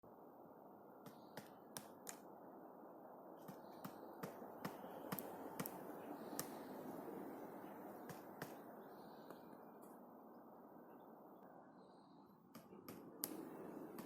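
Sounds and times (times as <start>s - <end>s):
steady background hiss: 0.1s - 14.0s
woodpecker pecking at tree trunk: 1.0s - 2.3s, 3.4s - 6.7s, 8.0s - 8.6s, 12.5s - 14.0s.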